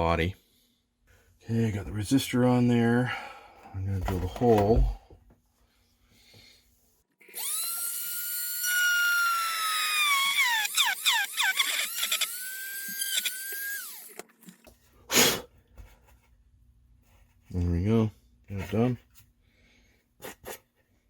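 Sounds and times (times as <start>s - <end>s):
electric drill whining: 7.2s - 14.5s.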